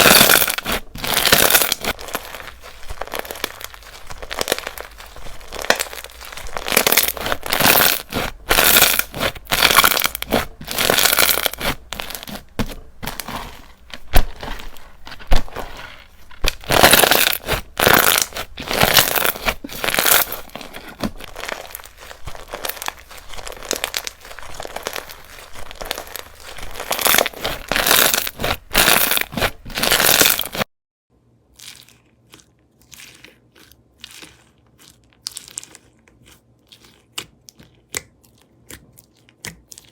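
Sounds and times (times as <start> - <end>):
slime crunchy crackling: 0.0 - 30.7.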